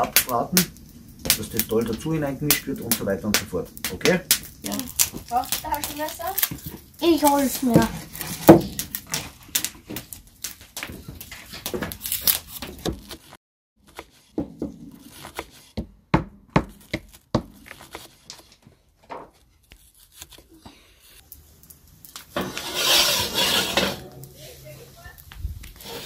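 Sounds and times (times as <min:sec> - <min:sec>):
rasping scrape: 0:07.7 - 0:09.4, 0:19.6 - 0:21.2, 0:22.3 - 0:24.5, 0:25.7 - 0:26.0
wood and utensils knocking: 0:07.7 - 0:10.0.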